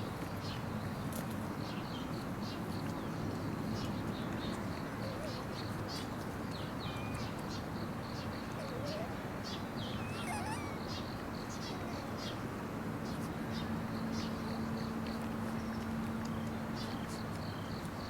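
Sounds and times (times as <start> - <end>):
puppies suckling clicks and squeaks: 2.2 - 9.2, 9.8 - 12.4, 14.5 - 18.0
puppy whimper: 5.0 - 5.7, 8.4 - 12.4.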